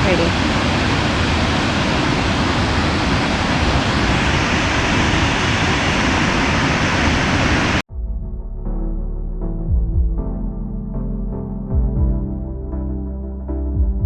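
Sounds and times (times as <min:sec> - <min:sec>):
waterfall rushing: 0:00.0 - 0:07.8
background music with held notes: 0:08.6 - 0:14.0.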